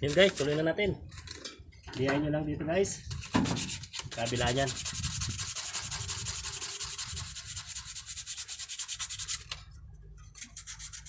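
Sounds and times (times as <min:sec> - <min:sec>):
sandpaper rubbing on metal: 0:00.1 - 0:00.7, 0:03.1 - 0:09.6, 0:10.3 - 0:11.0.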